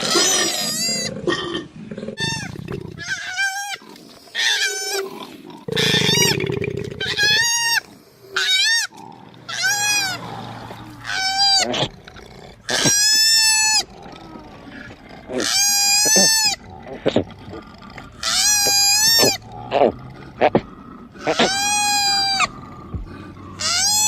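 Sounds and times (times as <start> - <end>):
low rasping grunt: 16.2 - 23.9
koala wavering cries: 18.2 - 19.4, 21.2 - 22.5, 23.6 - 24.0.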